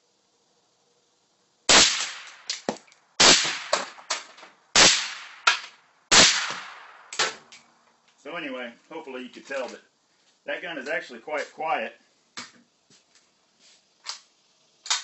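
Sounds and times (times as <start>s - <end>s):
suppressed rifle shots: 1.7s - 7.5s.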